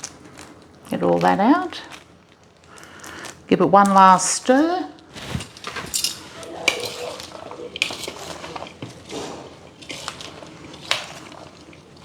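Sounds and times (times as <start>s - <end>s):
utensil clinking and scraping bowl: 3.8s - 12.0s
moist squish of rice salad: 5.0s - 12.0s.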